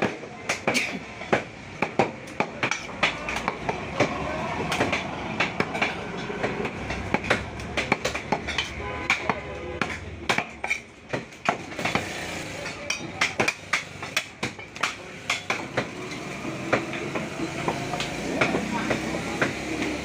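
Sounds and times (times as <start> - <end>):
cleaver chopping on wooden block: 0.0 - 12.0, 12.8 - 16.0
market background rumble: 0.0 - 20.0.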